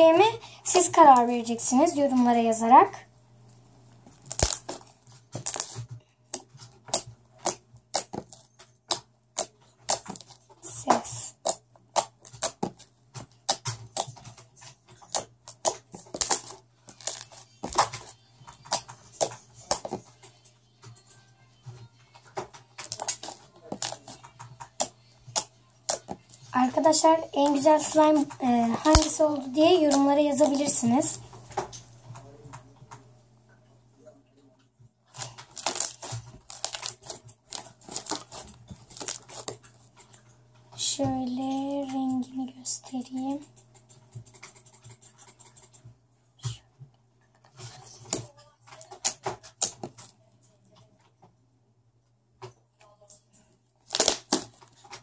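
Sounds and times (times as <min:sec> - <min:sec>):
slime crackling pops: 0:04.2 - 0:04.8, 0:28.8 - 0:29.2, 0:35.2 - 0:39.5, 0:53.9 - 0:54.5.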